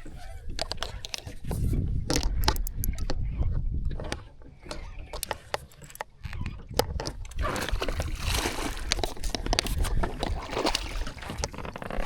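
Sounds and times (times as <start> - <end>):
sharp clicks: 2.1 - 3.2
water splashing and sloshing: 4.0 - 12.0.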